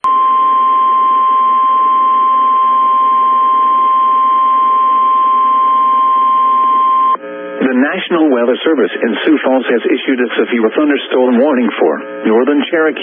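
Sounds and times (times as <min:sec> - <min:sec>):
steady alarm tone: 0:00.0 - 0:07.2
radio hiss: 0:07.6 - 0:13.0.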